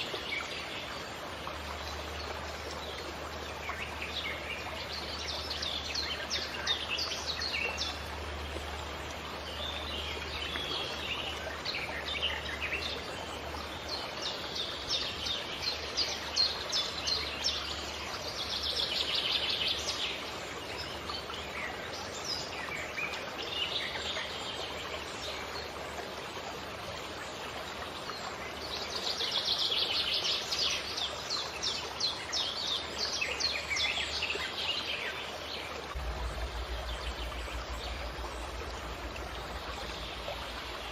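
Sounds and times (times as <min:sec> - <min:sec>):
steady rushing noise: 0:35.9 - 0:40.9.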